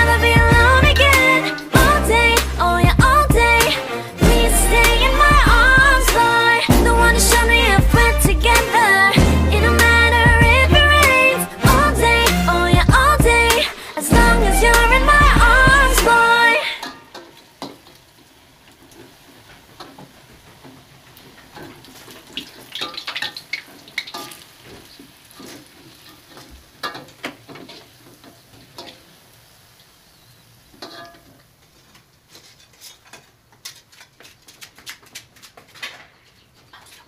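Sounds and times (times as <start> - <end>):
faint steady hiss: 10.7 - 33.8
dishes and utensils clinking: 30.8 - 31.4.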